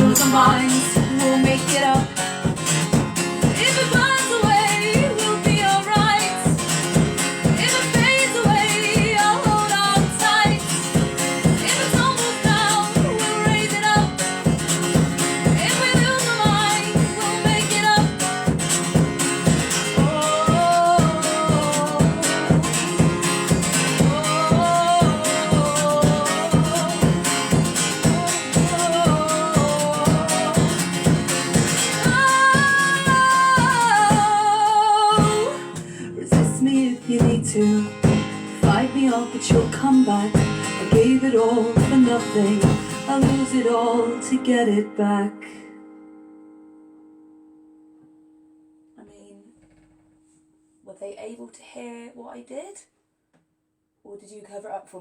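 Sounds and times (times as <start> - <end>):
women singing: 0.0 - 2.3, 3.4 - 14.6, 15.3 - 18.2, 19.5 - 45.6
strummed acoustic guitar: 0.0 - 50.6.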